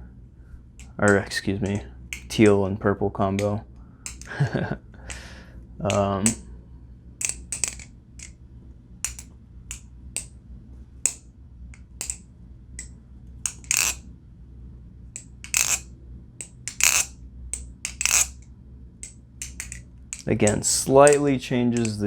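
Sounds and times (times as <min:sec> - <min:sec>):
butterfly knife clicking and clacking: 0:02.1 - 0:02.4, 0:04.1 - 0:04.4, 0:07.2 - 0:08.3, 0:09.1 - 0:10.3, 0:11.8 - 0:12.2, 0:13.5 - 0:14.0, 0:15.2 - 0:18.4, 0:19.0 - 0:22.0.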